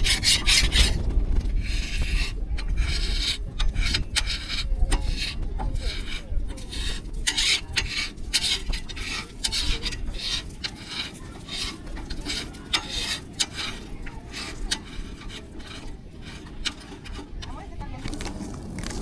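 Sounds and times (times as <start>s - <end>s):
low rumble: 0.0s - 3.7s, 18.0s - 19.0s
scraping strokes: 0.0s - 19.0s.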